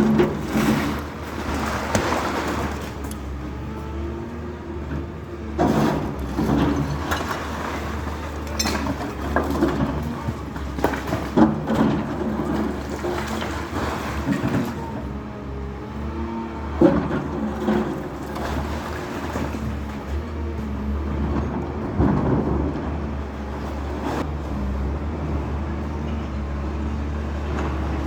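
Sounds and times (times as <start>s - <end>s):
rubble knocking and cracking: 0.0s - 3.2s
heavy machine engine running: 0.0s - 28.0s.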